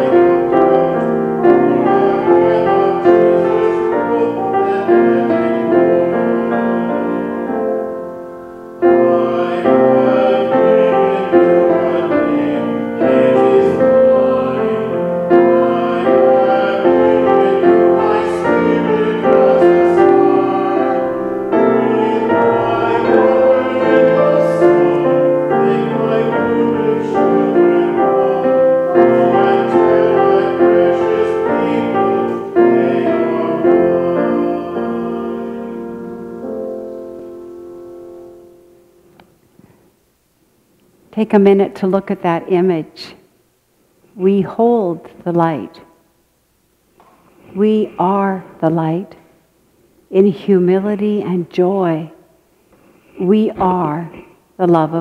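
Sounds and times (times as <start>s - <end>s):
person singing: 0.0s - 7.3s, 8.9s - 36.2s
piano music: 0.0s - 39.1s.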